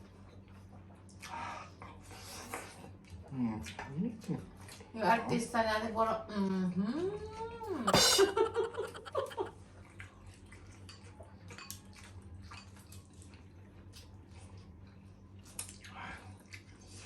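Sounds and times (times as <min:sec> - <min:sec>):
person speaking: 0:07.9 - 0:09.5.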